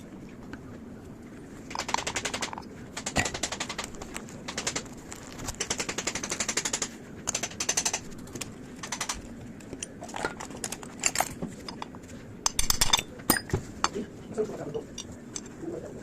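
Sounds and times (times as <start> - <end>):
sharp mechanical clicks: 1.7 - 10.0.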